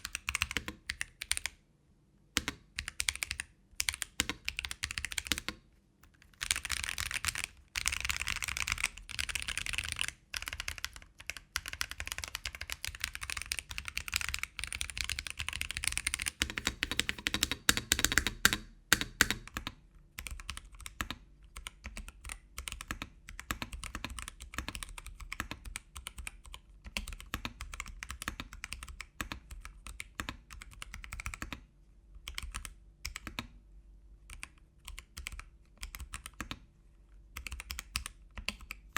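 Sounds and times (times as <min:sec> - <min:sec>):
typing on mechanical keyboard: 0:00.0 - 0:01.6, 0:02.4 - 0:31.6, 0:32.2 - 0:33.5, 0:34.3 - 0:36.6, 0:37.3 - 0:38.9.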